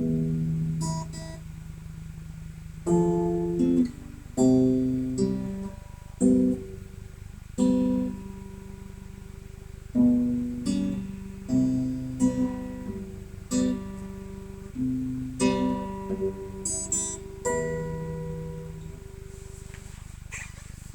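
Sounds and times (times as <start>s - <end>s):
acoustic guitar chords ringing: 0.0s - 20.9s.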